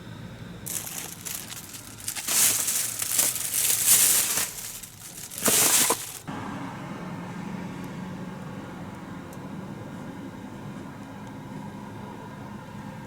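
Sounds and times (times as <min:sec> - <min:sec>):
crinkling and rustling: 0:00.7 - 0:06.3.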